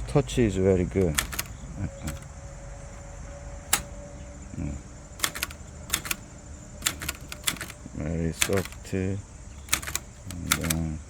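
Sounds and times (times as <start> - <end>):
typewriter key clicks: 1.0 - 2.3, 3.7 - 3.9, 5.2 - 6.2, 6.8 - 7.8, 8.4 - 8.8, 9.6 - 10.8.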